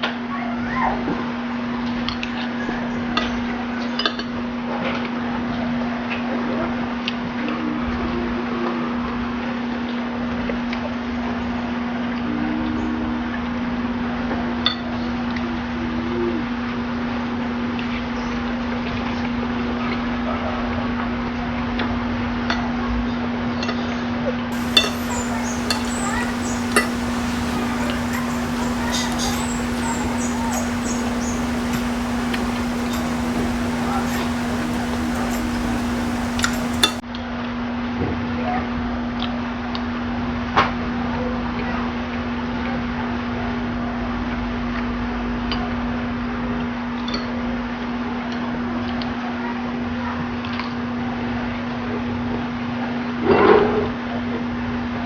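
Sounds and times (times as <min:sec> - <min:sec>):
soft eating noises: 0:24.6 - 0:37.0
spoon clicking on bowl: 0:24.6 - 0:37.0
steady low hum: 0:24.6 - 0:37.0
utensil clinking against dish: 0:24.6 - 0:37.0.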